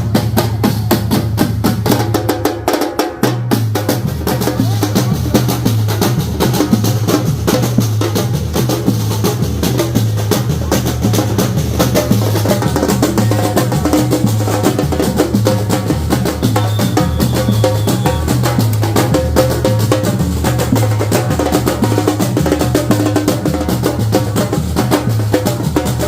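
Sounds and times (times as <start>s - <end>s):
fast samba drumming: 0.0s - 26.0s.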